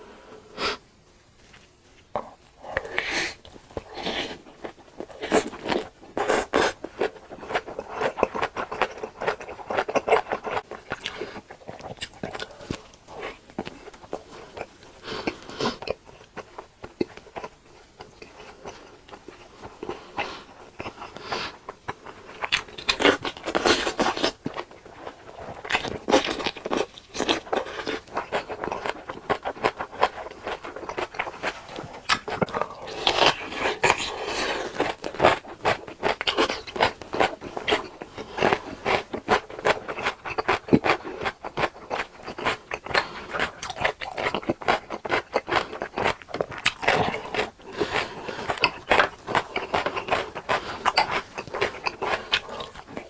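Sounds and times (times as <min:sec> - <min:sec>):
crunchy chewing: 0:01.4 - 0:53.0.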